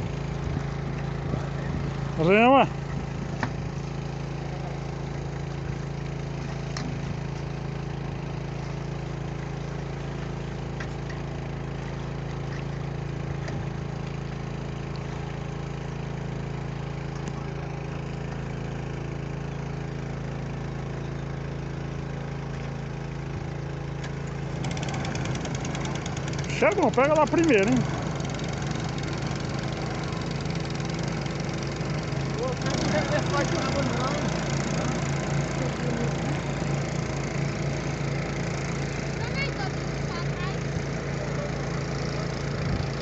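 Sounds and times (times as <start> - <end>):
small boat motor humming: 0.0 - 43.0.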